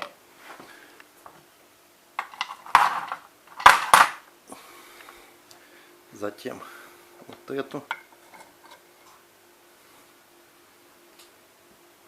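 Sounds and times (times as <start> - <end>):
metal pump parts clattering: 2.2 - 4.1.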